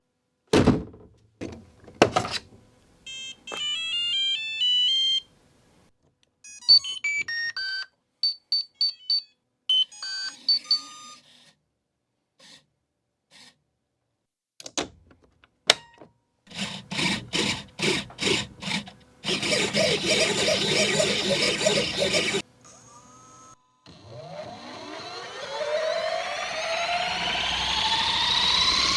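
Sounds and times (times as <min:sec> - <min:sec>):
pulsing noises: 0:16.9 - 0:22.4.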